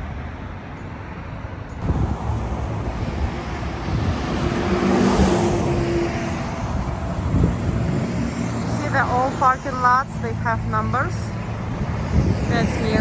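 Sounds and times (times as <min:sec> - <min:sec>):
wind buffeting microphone: 0:00.0 - 0:13.0
car driving past: 0:01.8 - 0:09.8.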